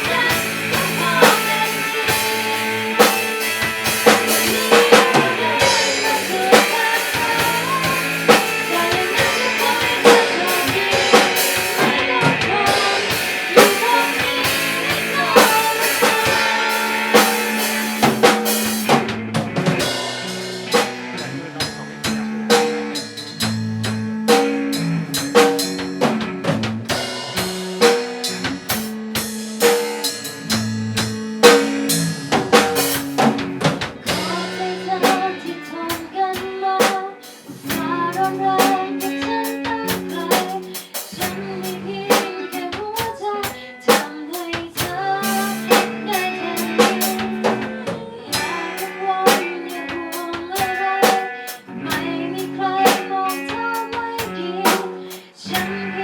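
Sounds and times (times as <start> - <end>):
bass line: 0.0 - 28.7
drum kit beat: 0.0 - 56.0.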